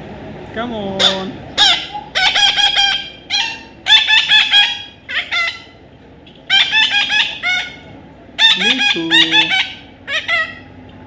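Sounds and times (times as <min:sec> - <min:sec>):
parrot shrill repeated calls: 0:01.0 - 0:05.8, 0:06.5 - 0:07.8, 0:08.4 - 0:10.7.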